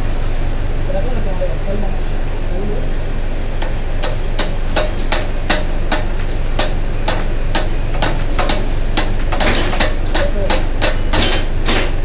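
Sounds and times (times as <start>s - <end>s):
hammer blows on metal: 3.6s - 12.0s.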